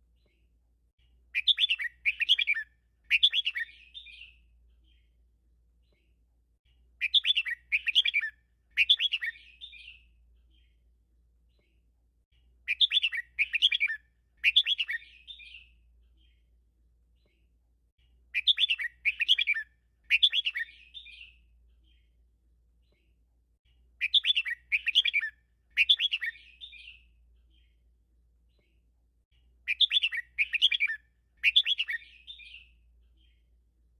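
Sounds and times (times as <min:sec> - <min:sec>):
bird warbling song: 0:01.3 - 0:05.1, 0:07.0 - 0:10.8, 0:12.7 - 0:16.4, 0:18.3 - 0:22.1, 0:24.0 - 0:27.8, 0:29.6 - 0:33.5.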